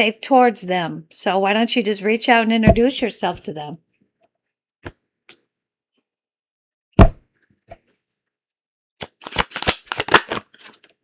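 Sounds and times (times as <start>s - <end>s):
cards slapped down: 9.0s - 10.5s.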